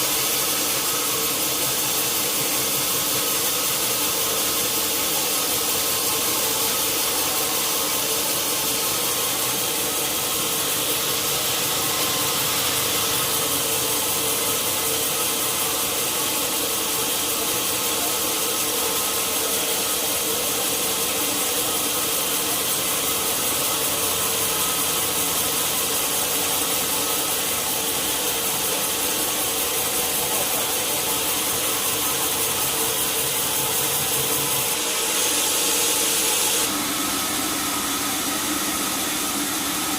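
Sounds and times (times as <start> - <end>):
saw blade hissing through wood: 0.0 - 38.5
machine hum: 6.0 - 16.2.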